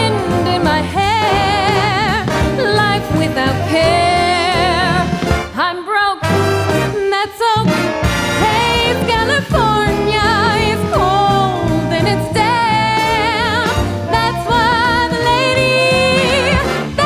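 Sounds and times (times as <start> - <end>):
big band swing music: 0.0 - 17.0.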